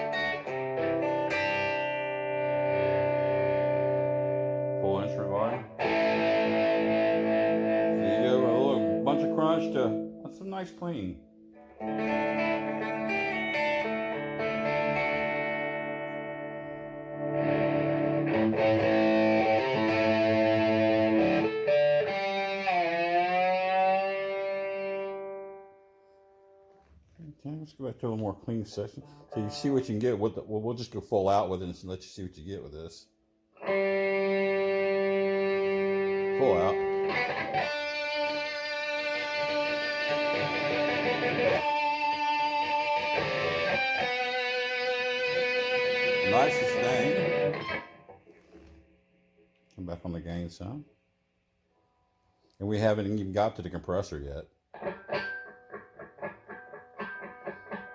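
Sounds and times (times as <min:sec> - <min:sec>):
electric guitar chords ringing: 0:00.0 - 0:26.8, 0:29.1 - 0:29.9, 0:33.6 - 0:48.3, 0:54.8 - 0:57.9.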